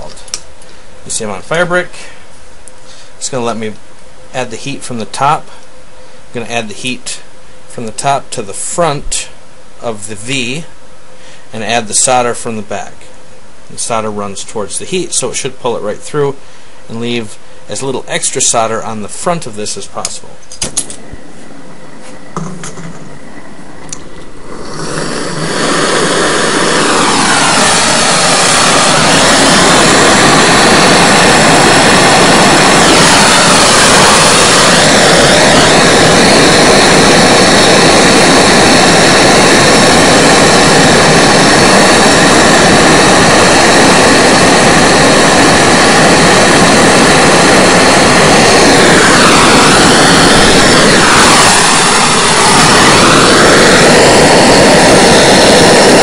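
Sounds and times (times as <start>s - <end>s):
gas torch hissing: 20.6s - 56.0s.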